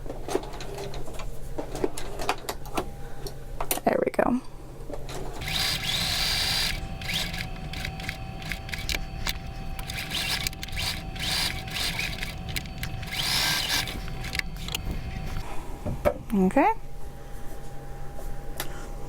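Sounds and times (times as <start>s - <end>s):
sewing machine stitching: 5.4s - 15.4s.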